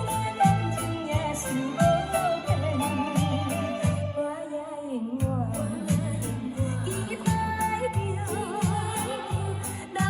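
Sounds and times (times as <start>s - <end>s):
steady beat: 0.0s - 4.2s
woman singing ballad: 0.0s - 10.0s.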